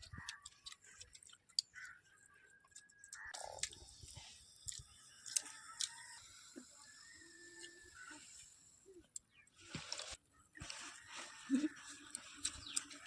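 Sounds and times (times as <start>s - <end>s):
people chewing food: 0.0s - 13.0s
wet mouth smacks and clicks: 3.1s - 5.9s.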